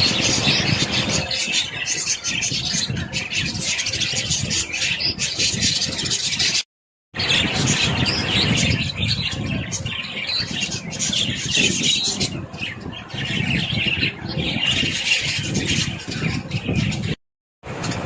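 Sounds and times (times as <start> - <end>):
budgerigars chattering and chirping: 0.0 - 6.6.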